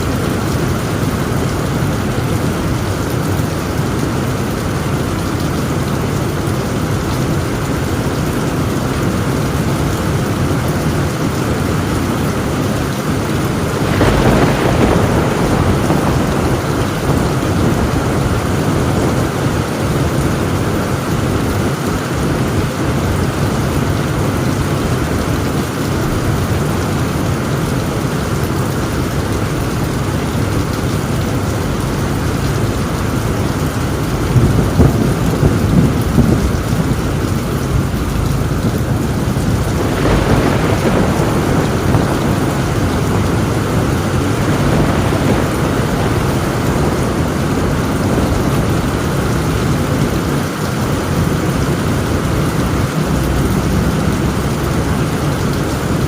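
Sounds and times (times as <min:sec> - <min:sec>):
heavy rain on a tin roof: 0:00.0 - 0:56.0
thunder clap: 0:11.2 - 0:56.0.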